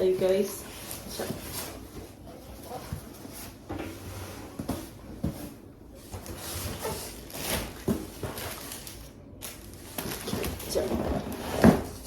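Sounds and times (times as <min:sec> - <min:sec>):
packaging rustling: 0:06.2 - 0:12.0.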